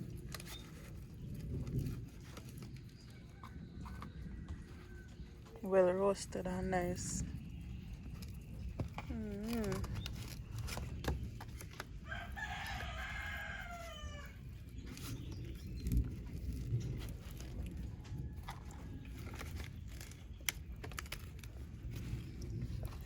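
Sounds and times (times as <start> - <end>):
rooster crowing: 12.0 - 14.5.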